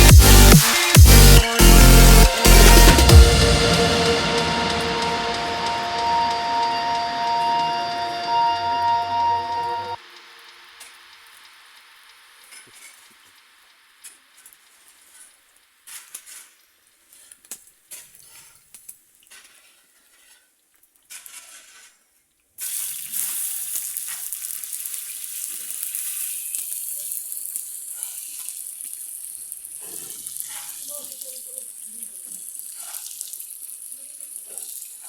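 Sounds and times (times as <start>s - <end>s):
food sizzling in hot oil: 22.6s - 35.0s.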